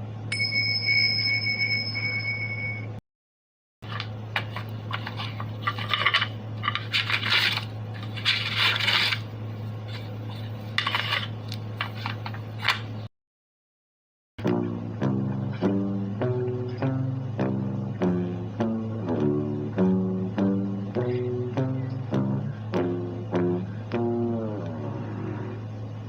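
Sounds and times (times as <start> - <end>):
held ringing tone: 0.3 - 3.0
clinks and scrapes: 3.8 - 12.9
steady low hum: 3.8 - 13.1, 14.4 - 26.0.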